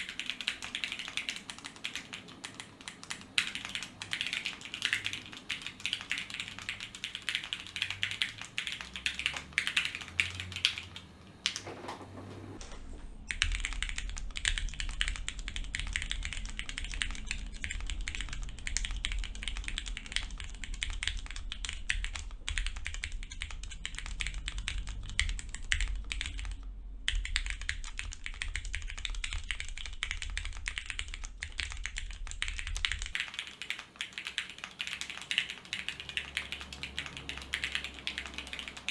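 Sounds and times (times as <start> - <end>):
mechanical keyboard typing: 0.0 - 12.6, 13.3 - 38.9
steady low hum: 0.0 - 30.1.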